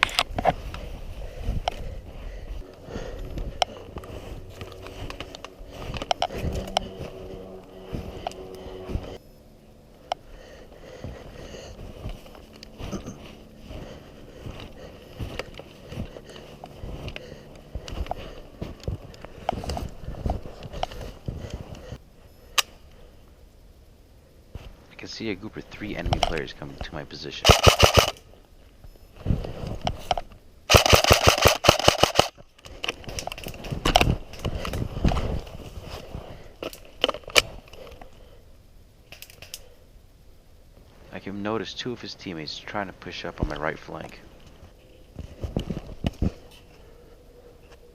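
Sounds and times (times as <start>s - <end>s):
clothing and gear rustling: 0.0s - 9.2s, 9.9s - 22.0s, 28.6s - 30.3s, 32.4s - 38.2s, 43.6s - 47.9s
snow crunching: 0.3s - 9.2s, 10.3s - 22.0s, 33.5s - 37.8s
scattered clicks: 2.7s - 9.2s, 25.8s - 28.2s, 29.8s - 34.8s, 39.0s - 39.7s
airsoft gun full-auto clicks: 22.5s - 22.8s, 27.4s - 28.2s, 30.7s - 34.1s.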